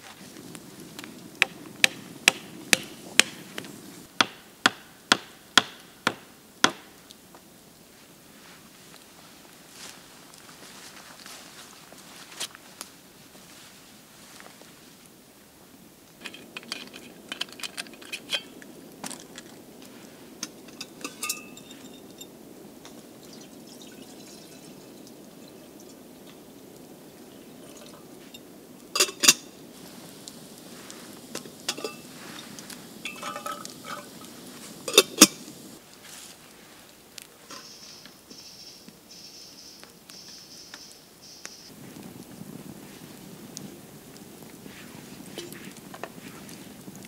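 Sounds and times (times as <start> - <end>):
cookware and utensils clinking: 20.4 - 22.3, 23.3 - 24.9, 29.0 - 29.5, 31.3 - 35.5.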